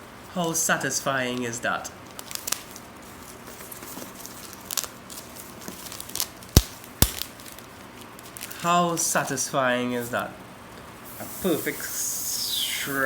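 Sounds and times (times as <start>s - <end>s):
plastic wrap crinkling: 1.3s - 9.3s.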